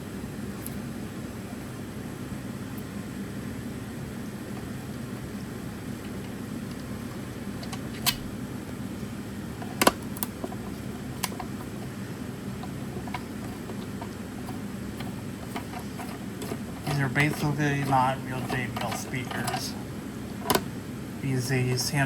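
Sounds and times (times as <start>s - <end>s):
steady low hum: 0.0s - 22.0s
plastic parts clicking: 9.6s - 11.8s, 12.6s - 19.8s, 20.4s - 20.7s.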